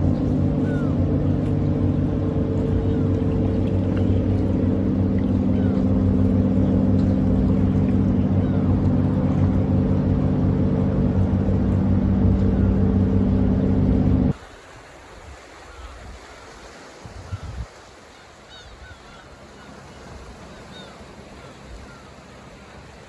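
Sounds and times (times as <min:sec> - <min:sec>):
engine droning steadily: 0:00.0 - 0:14.4.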